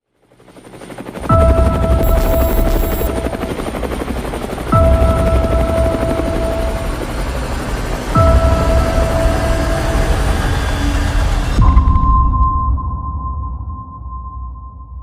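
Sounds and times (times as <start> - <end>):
helicopter rotor sound effect: 0.2 - 11.6
synth tone with bass sweep: 2.0 - 3.2.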